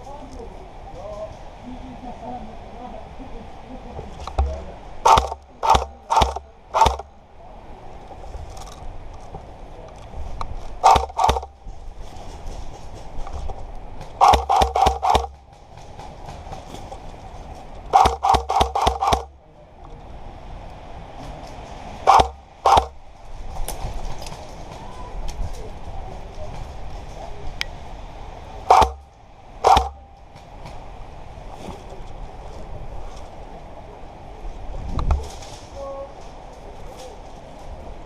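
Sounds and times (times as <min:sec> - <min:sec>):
airsoft gun shots: 0:04.4 - 0:07.1, 0:10.8 - 0:11.5, 0:14.2 - 0:15.4, 0:17.9 - 0:19.3, 0:22.1 - 0:23.0, 0:28.7 - 0:30.1.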